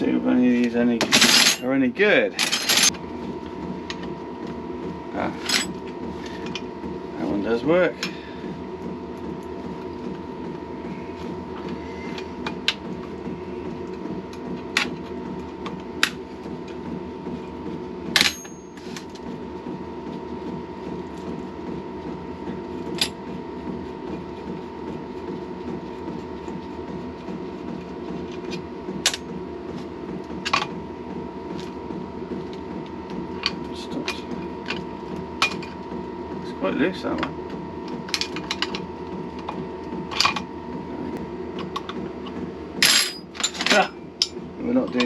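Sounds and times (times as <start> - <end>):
workshop hum: 0.0 - 45.0
spanners clinking against bolts: 1.0 - 1.7, 2.4 - 2.9.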